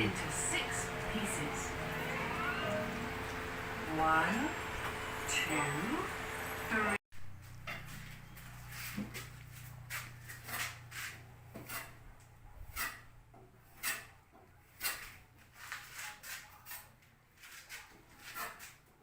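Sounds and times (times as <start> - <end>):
low hum: 0.0 - 12.6.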